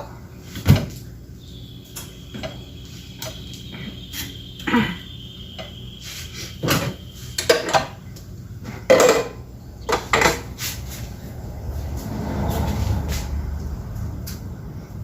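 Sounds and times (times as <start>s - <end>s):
dishes and utensils clinking: 6.6s - 8.0s, 8.8s - 10.5s.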